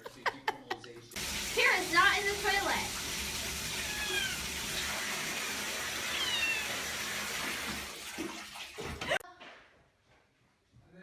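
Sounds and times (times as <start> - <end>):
running water hiss: 1.2 - 9.2
cat meowing: 3.7 - 4.5, 6.0 - 6.9.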